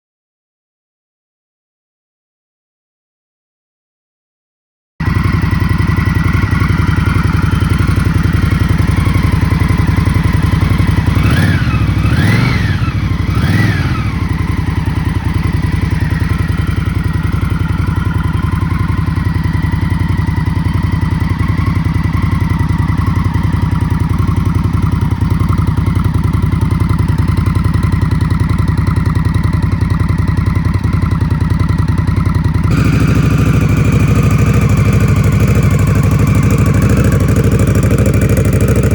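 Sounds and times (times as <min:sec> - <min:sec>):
motorcycle engine idling: 0:05.0 - 0:38.9.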